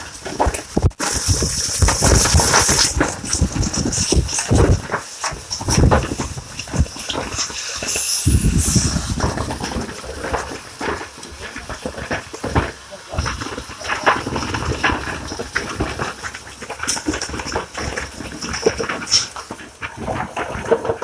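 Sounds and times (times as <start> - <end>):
hissing scrape: 1.0 - 12.1.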